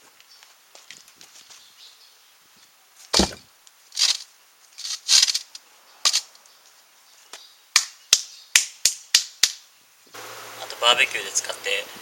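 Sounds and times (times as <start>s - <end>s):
building materials knocking and scraping: 3.2s - 3.4s, 4.0s - 4.2s, 4.8s - 5.5s.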